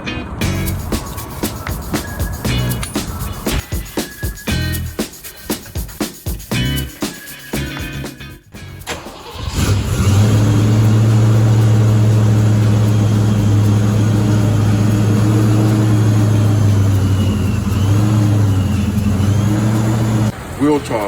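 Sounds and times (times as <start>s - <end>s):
car engine idling: 0.4s - 3.6s, 8.8s - 21.0s.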